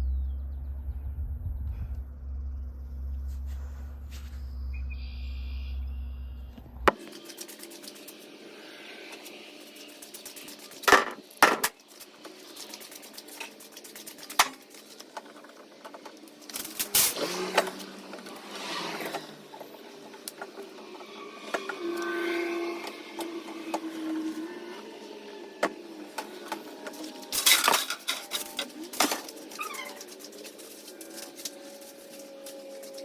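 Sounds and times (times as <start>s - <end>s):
low steady hum: 0.0s - 7.6s.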